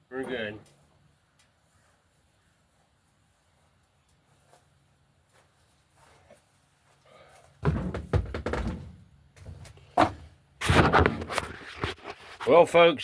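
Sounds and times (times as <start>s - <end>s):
knocks and thuds of handling: 7.6s - 11.4s.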